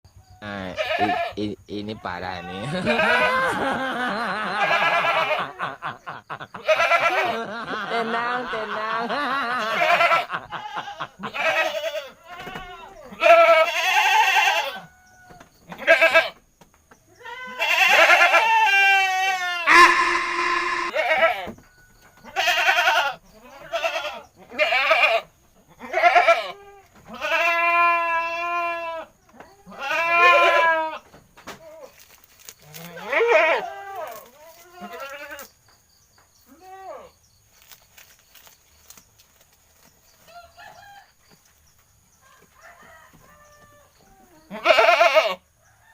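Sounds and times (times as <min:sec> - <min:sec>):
goat bleating: 0:00.7 - 0:01.4, 0:02.0 - 0:03.6, 0:04.5 - 0:05.6, 0:06.6 - 0:07.4, 0:09.6 - 0:14.8, 0:15.8 - 0:16.3, 0:17.2 - 0:21.5, 0:22.3 - 0:25.2, 0:25.8 - 0:29.1, 0:29.7 - 0:31.0, 0:32.9 - 0:35.5, 0:44.5 - 0:45.4.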